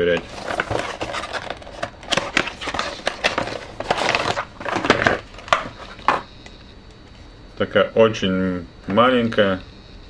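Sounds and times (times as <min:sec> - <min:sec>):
plastic packaging crinkling: 0:00.0 - 0:06.3.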